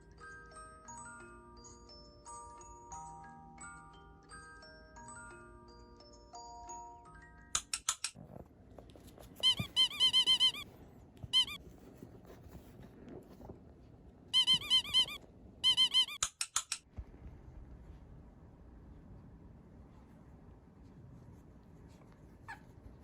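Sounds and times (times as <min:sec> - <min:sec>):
squeaky shoes on puppy: 0:09.2 - 0:11.6, 0:14.3 - 0:16.3.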